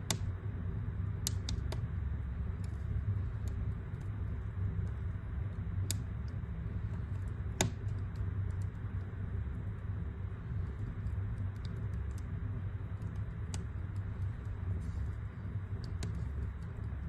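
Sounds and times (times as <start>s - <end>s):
sharp pops from fire: 0.0s - 0.4s, 1.2s - 1.9s, 5.6s - 8.9s, 10.8s - 17.0s
wood fire crackling: 0.0s - 17.0s.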